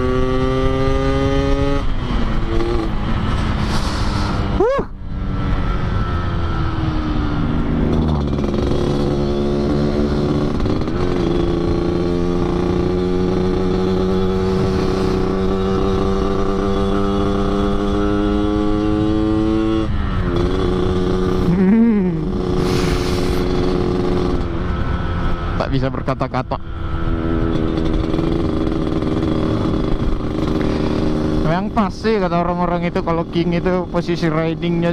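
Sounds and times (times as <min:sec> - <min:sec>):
two-stroke motorcycle engine growling: 0:00.0 - 0:34.9.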